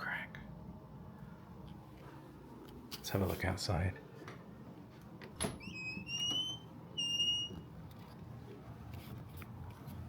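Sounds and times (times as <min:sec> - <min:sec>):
door squeaking: 0:05.4 - 0:07.7.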